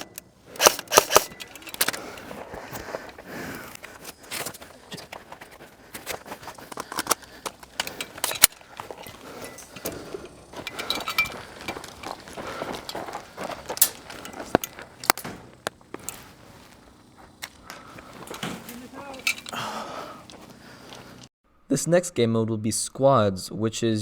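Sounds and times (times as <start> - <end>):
airsoft gun snaps and clicks: 0.0 - 4.1, 6.0 - 10.9, 13.6 - 16.2
footsteps: 0.0 - 21.3
rustling: 0.0 - 21.3.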